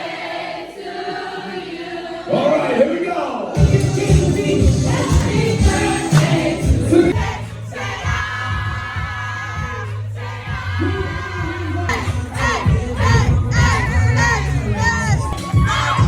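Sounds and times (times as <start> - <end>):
music with singing voices: 3.4 - 16.0.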